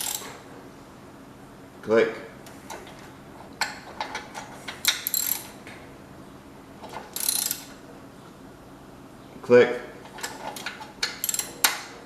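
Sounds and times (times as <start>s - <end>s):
torque wrench ratchet clicking: 0.0s - 0.3s, 4.8s - 5.5s, 7.2s - 7.7s, 11.0s - 11.7s.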